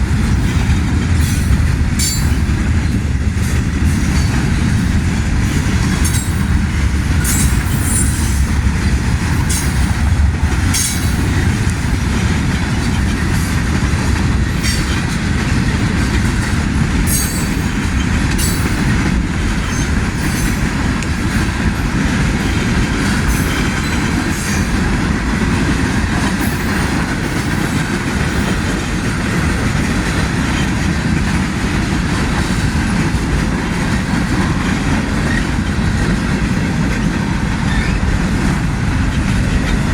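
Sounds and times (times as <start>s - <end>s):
freight train rumbling: 0.0s - 39.9s
wheel squeals and clicks: 37.6s - 38.1s.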